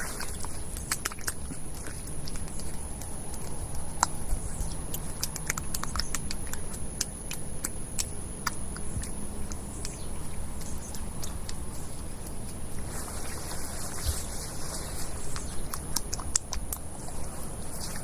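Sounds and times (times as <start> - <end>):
wet mud squishing: 0.0 - 18.0.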